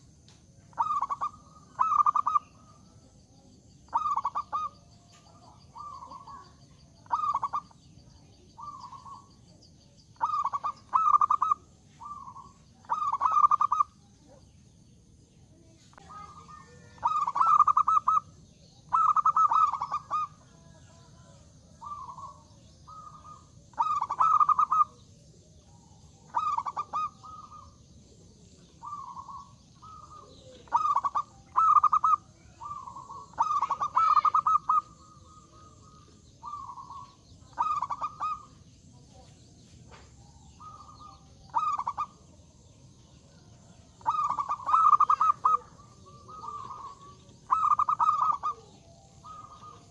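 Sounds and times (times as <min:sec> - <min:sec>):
dove cooing: 0:00.7 - 0:03.1, 0:03.8 - 0:09.5, 0:10.1 - 0:14.4, 0:15.9 - 0:39.3, 0:39.9 - 0:49.9.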